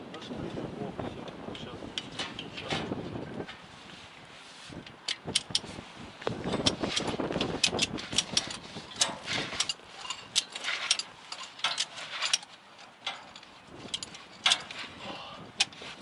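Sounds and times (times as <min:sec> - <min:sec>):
ratchet strap clicking: 0:05.0 - 0:14.9.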